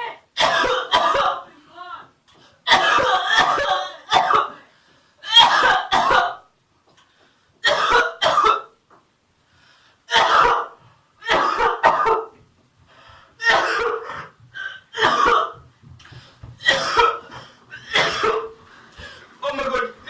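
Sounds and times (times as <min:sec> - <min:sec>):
person coughing harshly: 0:00.4 - 0:01.5, 0:02.7 - 0:04.6, 0:05.3 - 0:06.4, 0:07.6 - 0:08.8, 0:10.1 - 0:12.4, 0:13.4 - 0:15.6, 0:16.6 - 0:18.6.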